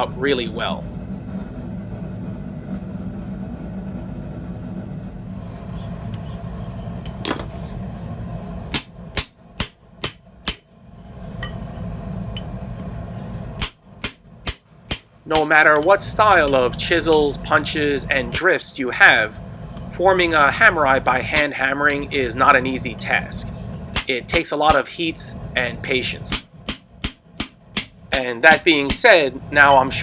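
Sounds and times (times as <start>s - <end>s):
steady low hum: 0.0s - 30.0s
hammer striking chisel on steel: 8.8s - 10.6s, 13.6s - 17.3s.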